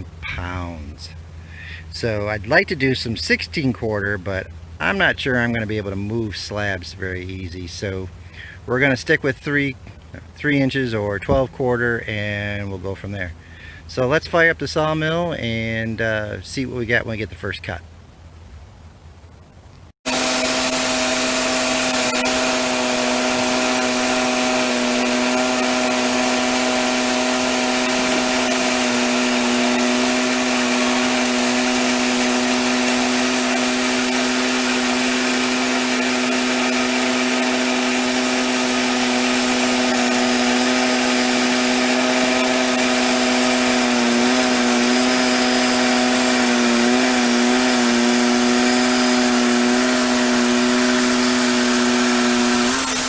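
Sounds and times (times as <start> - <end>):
bandsaw running: 20.0 - 53.0.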